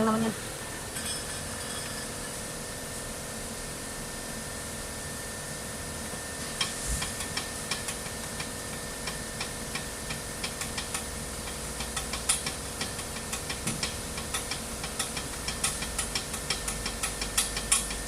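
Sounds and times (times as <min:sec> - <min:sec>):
steady background hum: 0:00.0 - 0:18.0.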